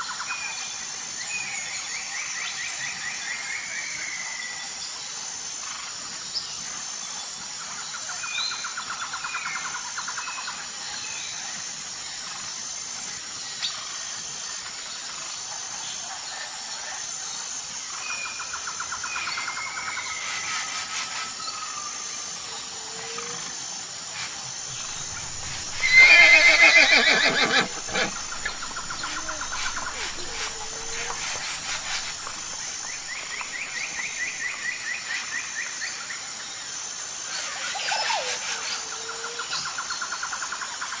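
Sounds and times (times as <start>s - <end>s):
pulsing insect hum: 4.0s - 40.8s
birds chirping and trilling: 24.7s - 34.6s.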